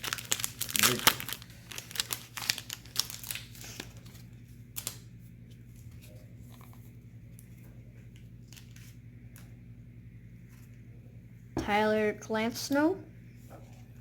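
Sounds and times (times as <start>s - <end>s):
plastic packaging crinkling: 0.0s - 5.1s
low steady hum: 0.0s - 14.0s.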